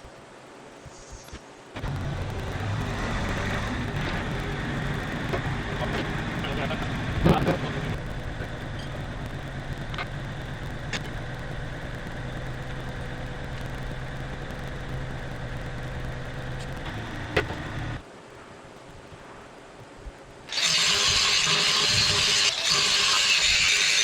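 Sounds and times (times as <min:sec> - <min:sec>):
faint hum: 0:00.0 - 0:24.0
truck engine idling: 0:01.8 - 0:18.0.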